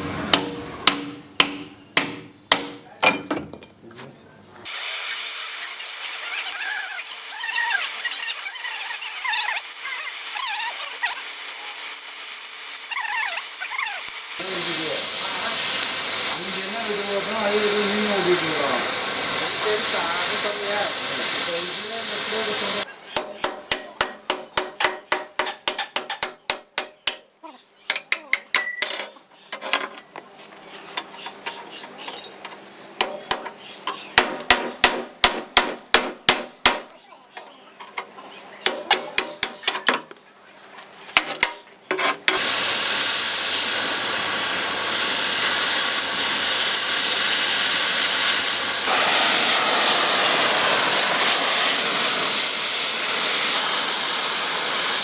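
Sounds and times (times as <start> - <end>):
hammer striking steel: 0.3 - 3.5, 23.2 - 27.3, 34.2 - 36.9, 38.6 - 40.0
loud hiss of gas cutting: 4.6 - 22.9, 42.3 - 55.0.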